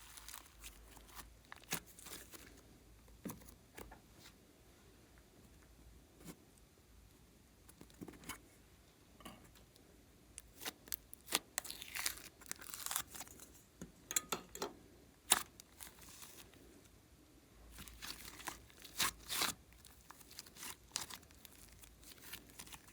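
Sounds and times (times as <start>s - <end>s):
small clicks and crinkles: 17.7s - 22.9s.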